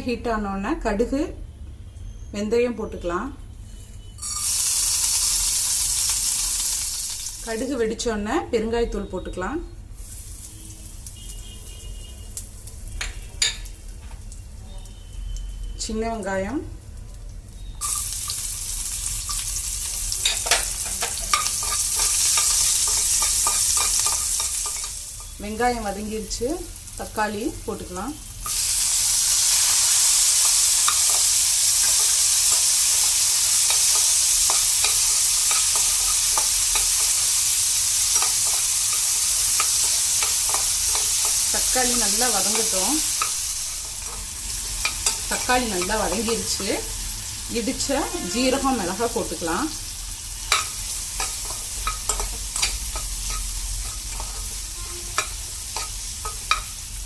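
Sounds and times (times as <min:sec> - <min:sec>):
vegetables sizzling in hot oil: 0:03.2 - 0:08.5, 0:09.8 - 0:57.0
spoon clicking against pan: 0:38.1 - 0:41.4, 0:50.5 - 0:54.4, 0:55.2 - 0:56.8.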